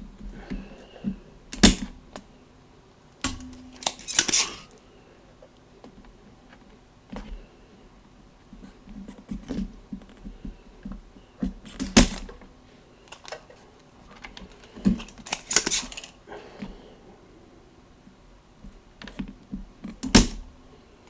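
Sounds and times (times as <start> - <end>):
tools clicking and tapping: 3.2 - 4.7, 13.1 - 13.4.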